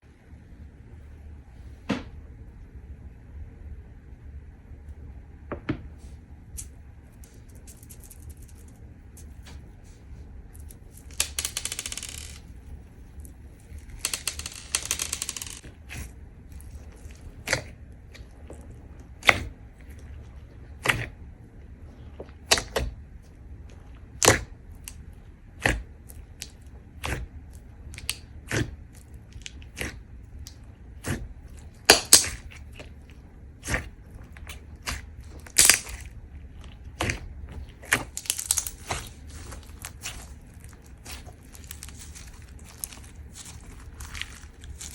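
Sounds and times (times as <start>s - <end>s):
slime squished by hand: 24.1s - 44.9s.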